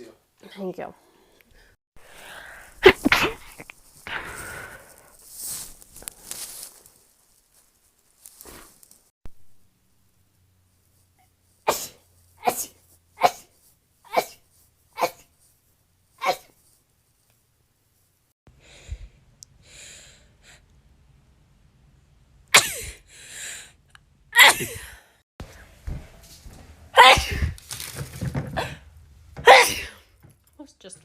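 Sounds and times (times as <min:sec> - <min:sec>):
woman sneezing: 0:02.8 - 0:03.6, 0:14.1 - 0:14.4, 0:15.0 - 0:15.2, 0:16.2 - 0:16.5, 0:22.6 - 0:23.0, 0:24.4 - 0:25.0, 0:27.0 - 0:27.6, 0:29.4 - 0:30.0.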